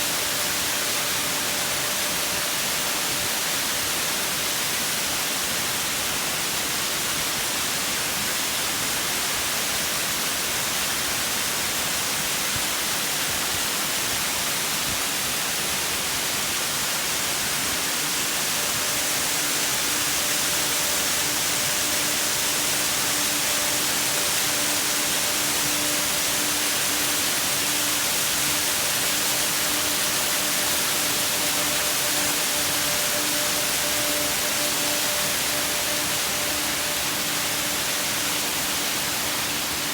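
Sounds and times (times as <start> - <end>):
waterfall rushing: 17.1 - 39.9.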